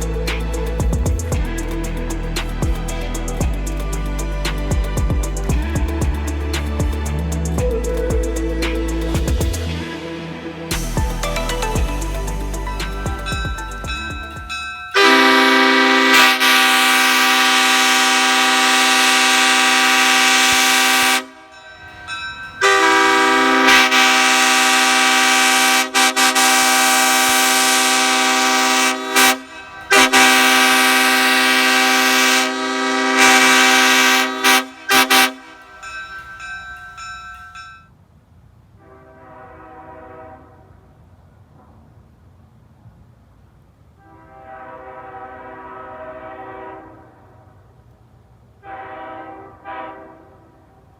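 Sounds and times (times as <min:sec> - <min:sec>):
multi-note train horn: 0:05.2 - 0:21.7, 0:22.6 - 0:36.3, 0:38.8 - 0:41.1, 0:44.0 - 0:47.7, 0:48.6 - 0:50.9.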